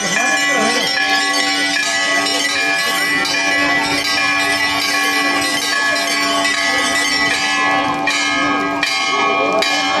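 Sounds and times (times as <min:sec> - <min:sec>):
temple bells ringing: 0:00.0 - 0:10.0.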